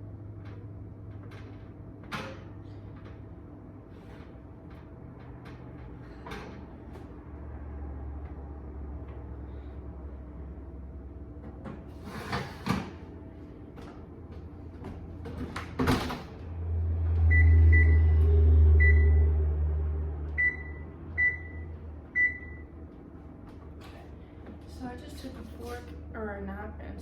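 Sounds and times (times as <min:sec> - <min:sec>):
keypad beeps: 0:20.4 - 0:21.6, 0:22.2 - 0:22.6.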